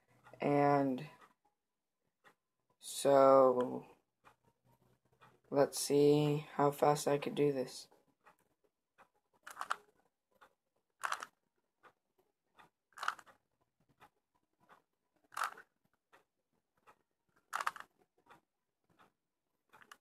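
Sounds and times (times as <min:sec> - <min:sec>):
puzzle cube plastic clacking: 0:09.4 - 0:09.9, 0:11.0 - 0:11.4, 0:12.9 - 0:13.4, 0:15.3 - 0:15.7, 0:17.4 - 0:18.0, 0:19.8 - 0:20.0.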